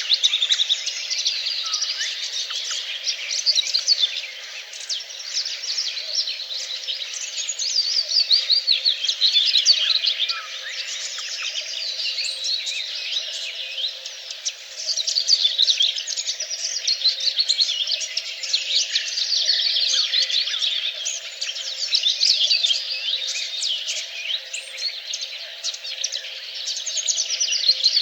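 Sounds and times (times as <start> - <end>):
songbirds chirping and trilling: 0.0 - 28.0.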